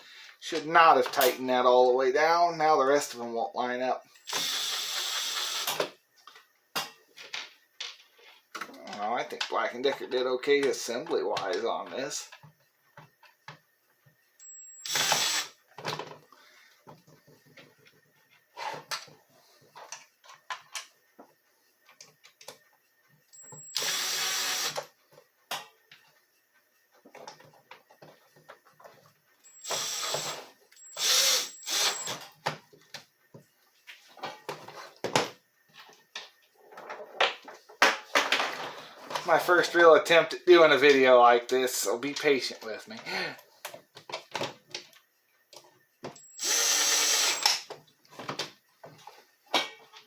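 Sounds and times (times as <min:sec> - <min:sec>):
power screwdriver driving screws: 0:04.2 - 0:05.9, 0:14.8 - 0:15.5, 0:23.6 - 0:24.8, 0:29.6 - 0:32.2, 0:46.2 - 0:47.7
plastic parts clicking and knocking: 0:34.3 - 0:39.3.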